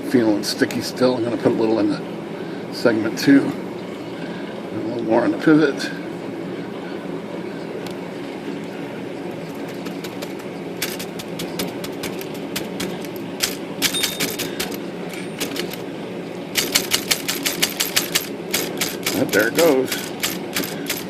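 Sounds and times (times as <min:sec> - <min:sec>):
typewriter type bar clacking: 0:10.0 - 0:14.8, 0:15.4 - 0:15.8, 0:16.6 - 0:21.0.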